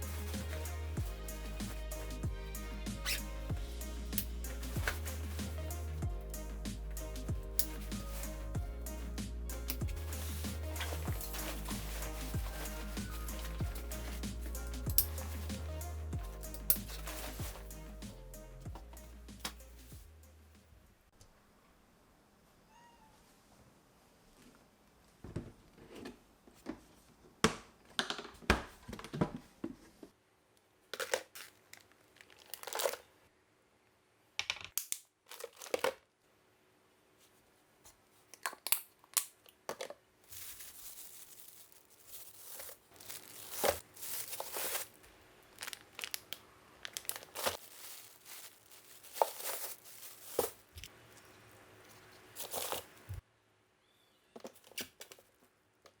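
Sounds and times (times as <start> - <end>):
packaging rustling and tearing: 4.2 - 5.7, 9.7 - 15.7, 16.4 - 17.7, 31.0 - 33.0, 35.3 - 36.0, 40.2 - 50.9, 52.0 - 53.2.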